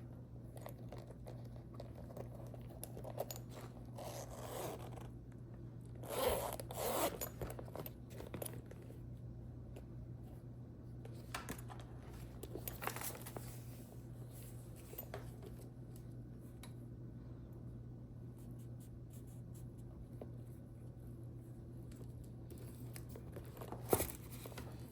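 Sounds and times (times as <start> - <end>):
bag handling clicks and rustles: 0.5 - 5.1, 6.0 - 9.0, 11.2 - 13.7, 22.5 - 24.9
zipper rasping: 3.9 - 5.1, 6.0 - 7.4.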